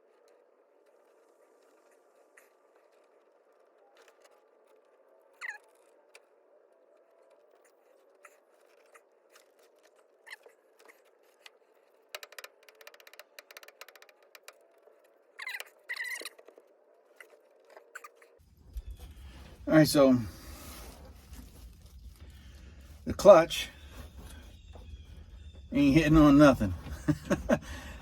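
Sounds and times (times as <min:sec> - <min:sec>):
short squeaks: 0:05.3 - 0:06.1, 0:15.2 - 0:19.6
clicks and scrapes of hand work: 0:07.3 - 0:19.0.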